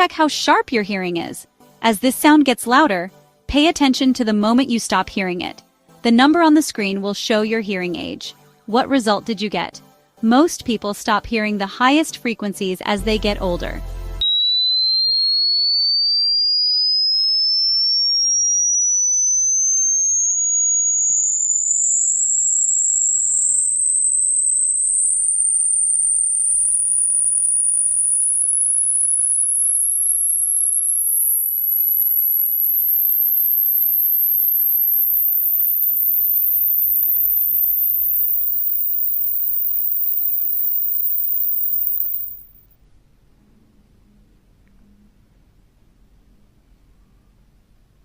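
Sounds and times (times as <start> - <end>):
rising sine test tone: 13.0 - 42.7.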